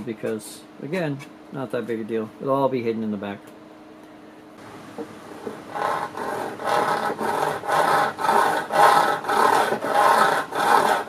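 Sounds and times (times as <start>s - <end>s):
hand saw cutting metal and wood: 5.7s - 11.0s.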